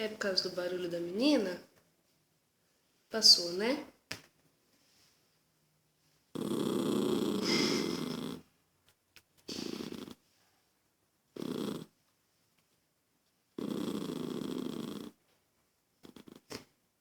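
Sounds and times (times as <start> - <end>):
small dog growling: 6.3 - 8.5, 9.5 - 10.2, 11.3 - 12.0, 13.6 - 15.2, 16.0 - 16.6.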